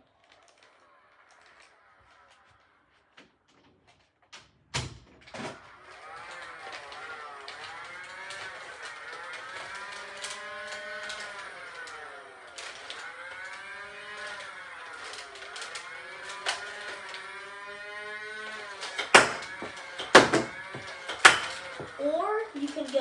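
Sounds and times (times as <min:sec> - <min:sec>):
toy blaster flywheels whining: 0:00.2 - 0:03.2, 0:05.4 - 0:23.0
darts firing clicks: 0:18.8 - 0:22.0.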